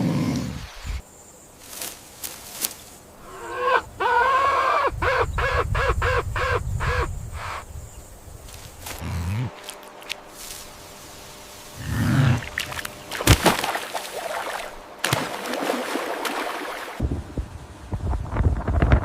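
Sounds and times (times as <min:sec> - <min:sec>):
animal calling: 0:03.2 - 0:07.6.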